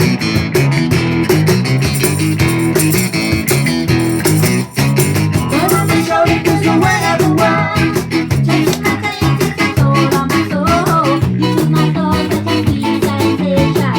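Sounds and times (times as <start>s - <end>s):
ska-punk band playing: 5.3s - 13.9s.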